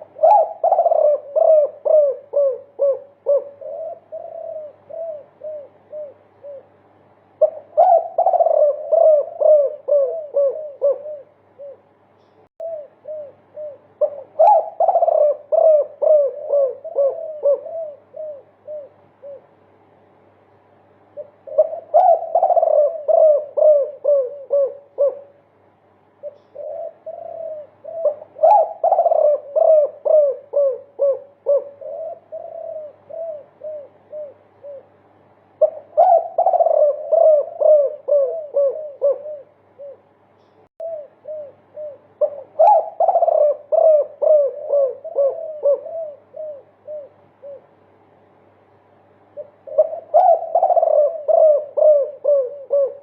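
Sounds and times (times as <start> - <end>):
dove cooing: 0.0 - 19.7, 21.1 - 25.5, 26.2 - 40.2, 40.8 - 48.3, 49.1 - 53.0
faint steady hum: 0.0 - 53.0.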